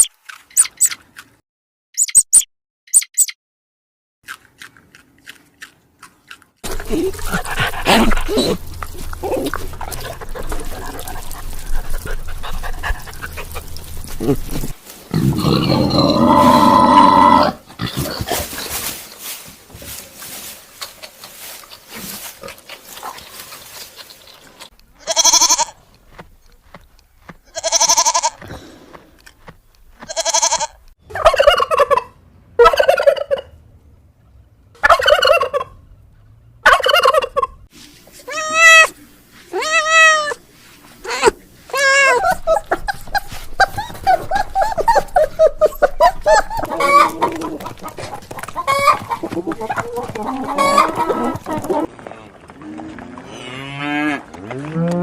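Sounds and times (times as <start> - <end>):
chickens calling: 31.1 - 33.5, 34.8 - 35.8, 36.6 - 37.7, 41.1 - 53.0.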